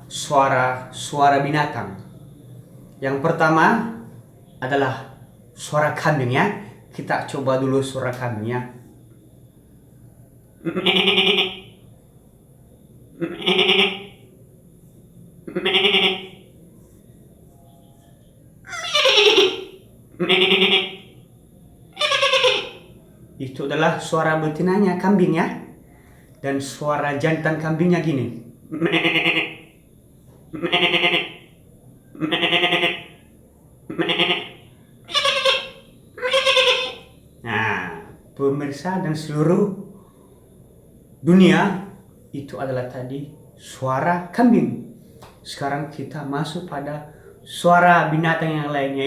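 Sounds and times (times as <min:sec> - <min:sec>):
man imitating goat bleats: 0:30.6 - 0:31.4, 0:33.9 - 0:34.5, 0:35.1 - 0:38.1.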